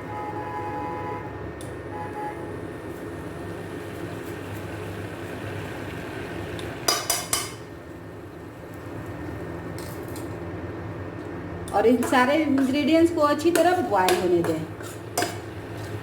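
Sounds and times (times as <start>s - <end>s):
metal utensil clinking on pan: 13.5s - 15.4s.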